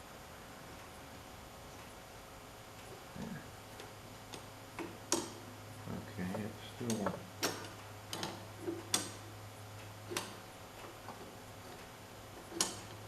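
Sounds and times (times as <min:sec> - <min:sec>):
steady low hum: 0:00.0 - 0:13.0
metal clicks and knocks: 0:06.3 - 0:09.3, 0:12.4 - 0:13.0.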